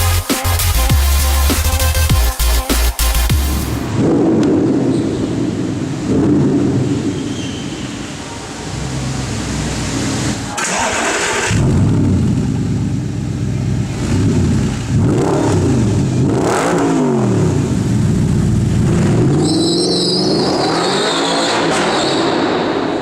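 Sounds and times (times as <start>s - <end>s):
car engine revving: 8.6s - 23.0s.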